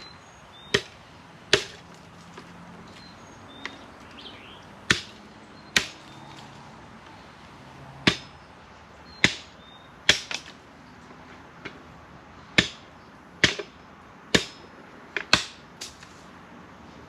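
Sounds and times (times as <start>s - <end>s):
blade chopping wood: 0.7s - 2.5s, 4.9s - 5.2s, 5.8s - 6.1s, 9.2s - 9.5s, 10.1s - 10.6s, 12.6s - 12.8s, 14.4s - 14.6s, 15.2s - 16.0s.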